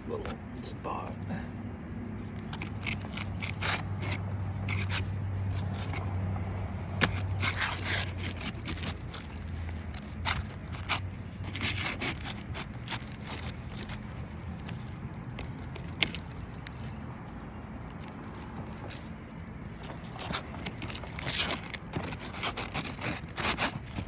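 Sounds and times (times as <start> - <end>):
low steady hum: 0.0 - 24.0
scraping on roof shingles: 19.9 - 24.0.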